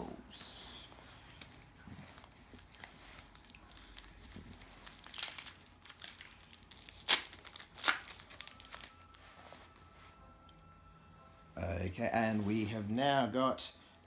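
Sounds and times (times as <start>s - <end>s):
wrapper crinkling: 1.0s - 10.1s
wrapper ripping: 1.3s - 9.9s.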